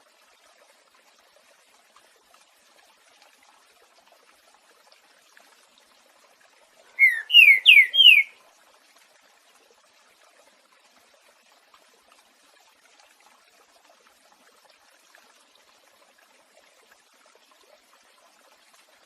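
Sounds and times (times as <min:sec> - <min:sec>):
water trickling: 0:00.0 - 0:19.0
bird whistling song: 0:07.0 - 0:08.4.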